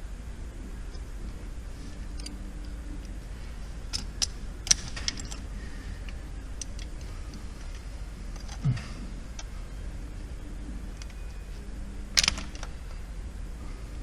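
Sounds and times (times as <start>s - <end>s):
low steady hum: 0.0s - 14.0s
metal parts and tool clinking: 3.8s - 5.5s, 6.5s - 8.7s.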